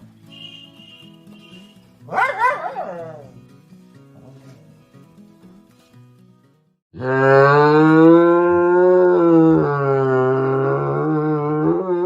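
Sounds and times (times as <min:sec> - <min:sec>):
low moo-like call: 0:07.0 - 0:12.0.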